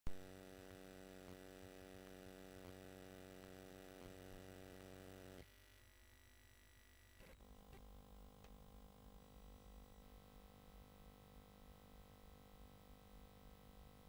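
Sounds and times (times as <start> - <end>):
faint steady hum: 0.1 - 14.0.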